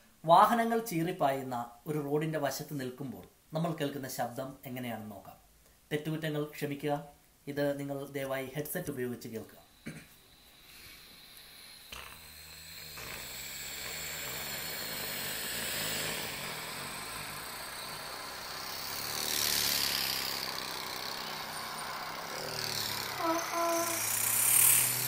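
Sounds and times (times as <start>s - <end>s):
man imitating traffic with voice: 22.3s - 24.2s.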